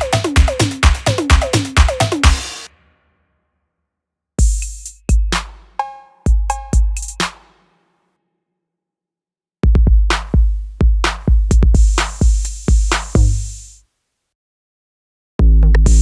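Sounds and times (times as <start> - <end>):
deep kick drums: 0.0 - 2.5, 4.4 - 7.2, 9.6 - 13.6, 15.4 - 16.0
snare and hi-hat hits: 0.0 - 2.8, 4.4 - 7.8, 9.9 - 13.8.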